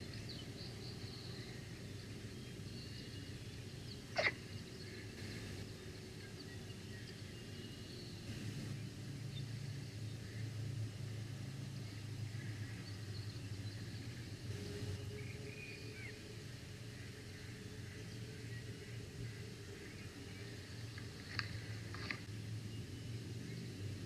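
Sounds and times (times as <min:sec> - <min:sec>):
faint songbird chirps: 0:00.0 - 0:24.0
steady low hum: 0:00.0 - 0:24.0
eagle sneezing: 0:04.2 - 0:04.4.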